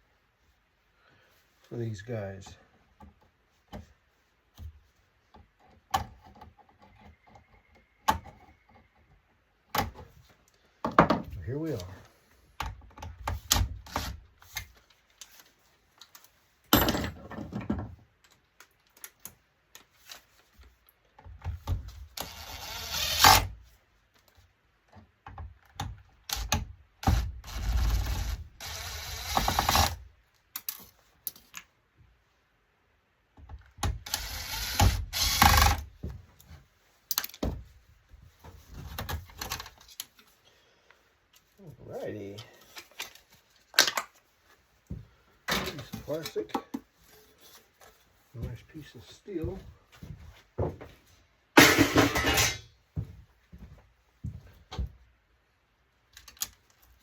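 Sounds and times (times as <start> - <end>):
clicks and knocks of parts: 12.6 - 22.3, 29.3 - 31.9, 36.4 - 37.7, 38.4 - 41.6, 42.3 - 44.3, 56.0 - 57.0
scraping and rattling: 51.6 - 52.7.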